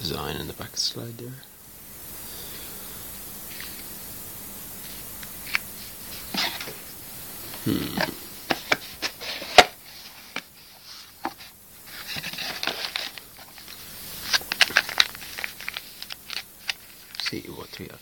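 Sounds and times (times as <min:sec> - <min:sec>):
plastic and cardboard rustling: 0:04.8 - 0:06.9, 0:08.0 - 0:18.0.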